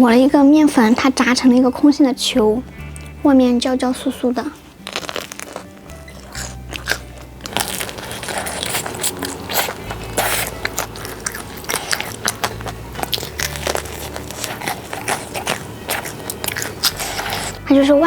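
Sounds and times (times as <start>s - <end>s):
crunchy chewing: 2.7s - 17.7s
crispy shell crackling: 4.4s - 17.6s.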